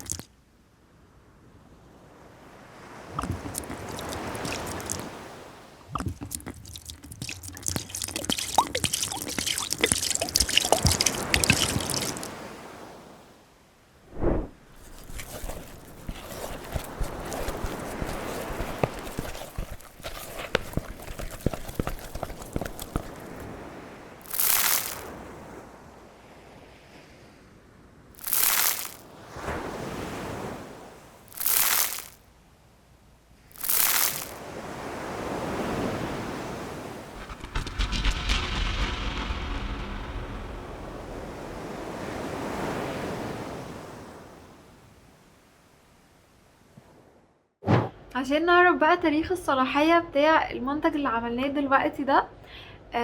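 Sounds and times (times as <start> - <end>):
spoon stirring wet sand scrub: 0.0 - 0.2, 3.1 - 5.2, 5.9 - 12.4, 14.6 - 23.6, 24.2 - 25.2, 28.2 - 29.0, 31.3 - 32.2, 33.5 - 34.4
soft rustling: 14.2 - 23.6.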